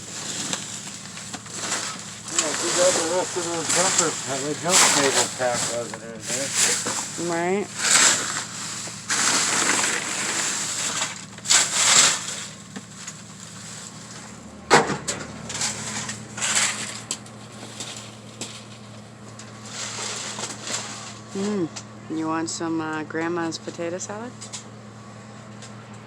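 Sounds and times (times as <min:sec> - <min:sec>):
bags crinkling and rustling: 0:00.0 - 0:14.4.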